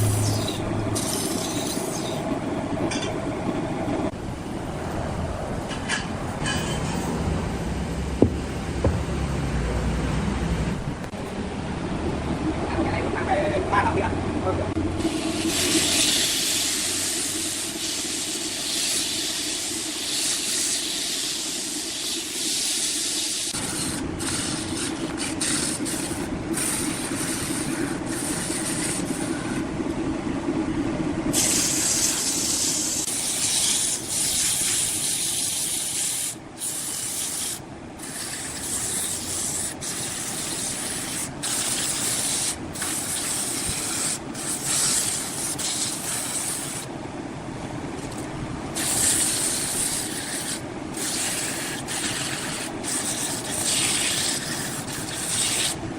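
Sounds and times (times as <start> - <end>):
wood lathe cutting hiss: 0.0 - 2.3, 15.0 - 29.6, 31.3 - 46.9, 48.7 - 55.8
lathe low hum: 0.0 - 6.4.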